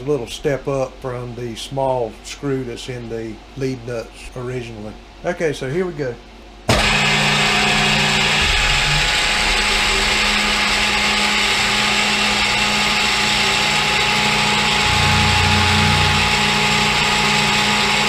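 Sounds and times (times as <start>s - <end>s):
milling machine running: 6.7s - 18.0s
low hum: 14.4s - 17.8s.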